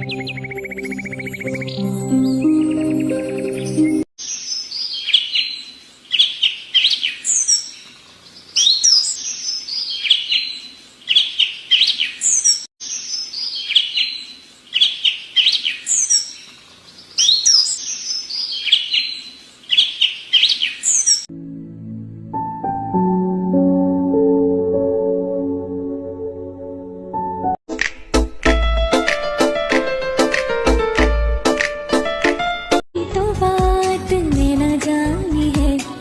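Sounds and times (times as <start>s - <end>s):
songbird singing: 0.0s - 21.3s.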